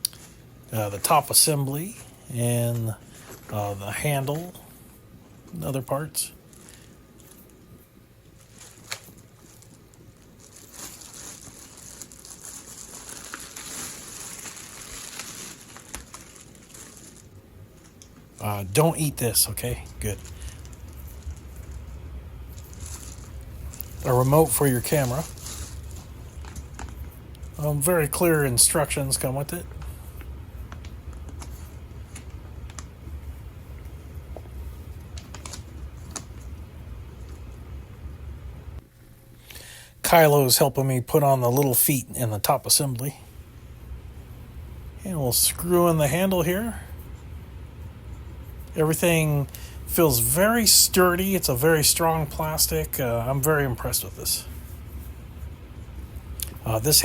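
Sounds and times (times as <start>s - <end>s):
plastic packaging rustling: 0.0s - 4.8s, 5.4s - 37.8s
steady low hum: 0.0s - 57.0s.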